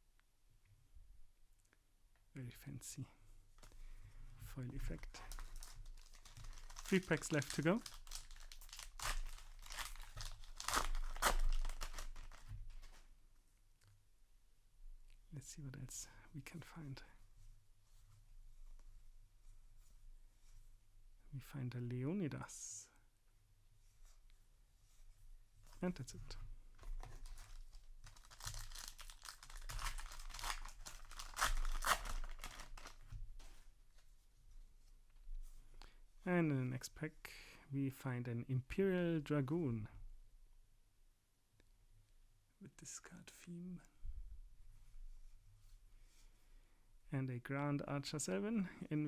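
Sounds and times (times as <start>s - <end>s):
wrapper crinkling and tearing: 5.0s - 13.0s, 26.8s - 33.0s.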